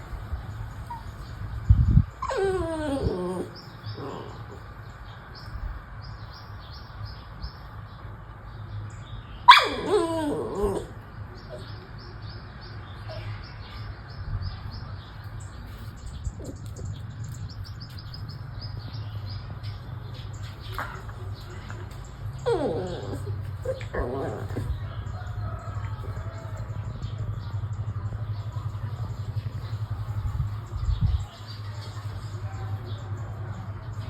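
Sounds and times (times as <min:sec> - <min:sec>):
dog whining: 0:02.2 - 0:04.6, 0:09.5 - 0:11.7, 0:22.4 - 0:24.9.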